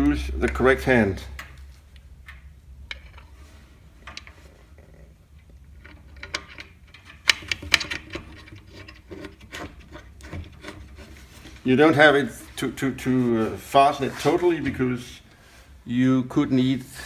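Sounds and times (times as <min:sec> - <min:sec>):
small metal fittings clicking: 0:05.4 - 0:11.0.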